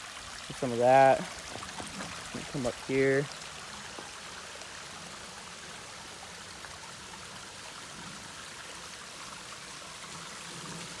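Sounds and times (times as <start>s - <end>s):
small waterfall splashing over rock: 0.0s - 11.0s.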